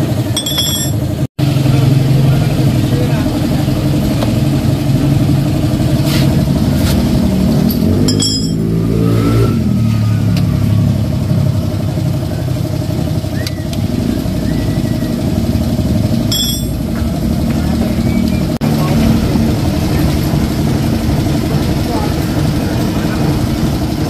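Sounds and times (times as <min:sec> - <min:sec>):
small engine revving: 0:05.8 - 0:16.1.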